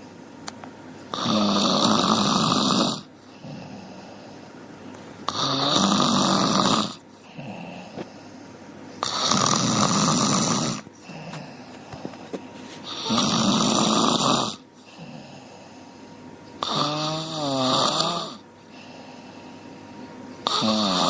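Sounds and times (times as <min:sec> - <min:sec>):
dog snoring: 0:01.1 - 0:04.5, 0:05.3 - 0:08.4, 0:09.0 - 0:12.2, 0:12.8 - 0:16.0, 0:16.6 - 0:19.8, 0:20.4 - 0:21.0.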